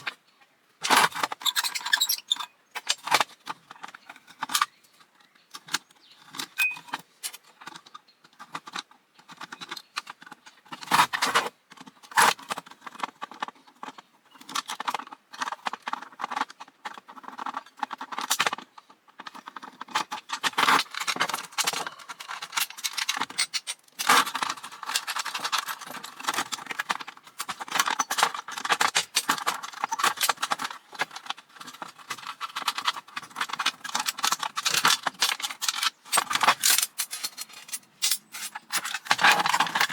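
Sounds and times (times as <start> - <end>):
small metal parts clinking: 6.4 - 7.4, 20.5 - 39.9.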